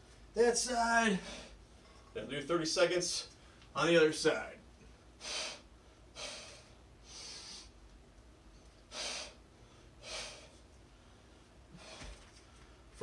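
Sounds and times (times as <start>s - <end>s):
man breathing hard: 5.2s - 7.8s, 8.9s - 12.9s.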